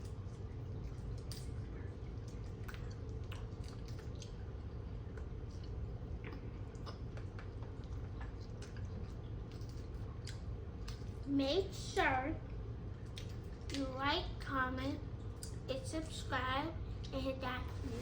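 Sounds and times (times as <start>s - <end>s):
chewing with wet smacks: 0.0s - 11.3s, 12.4s - 14.5s, 15.1s - 15.9s
steady low hum: 0.0s - 18.0s.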